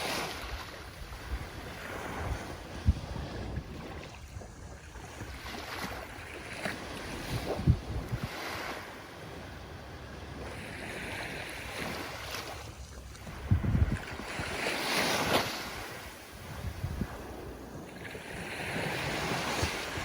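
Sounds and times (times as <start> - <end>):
ocean waves washing on shore: 0.0 - 20.0
wind thumps on microphone: 0.9 - 5.7, 6.6 - 8.4, 11.8 - 20.0.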